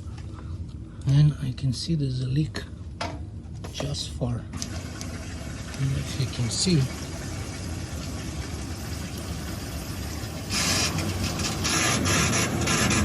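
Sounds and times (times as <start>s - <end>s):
washing machine hum: 0.0s - 13.0s.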